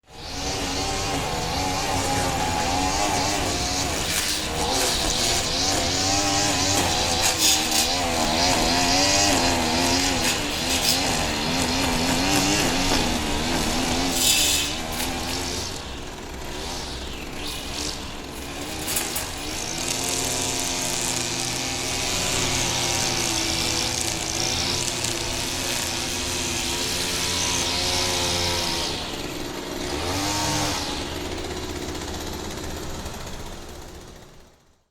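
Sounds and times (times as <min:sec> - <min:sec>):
string trimmer engine revving: 0:00.0 - 0:34.2
spinning line hiss: 0:00.1 - 0:32.4.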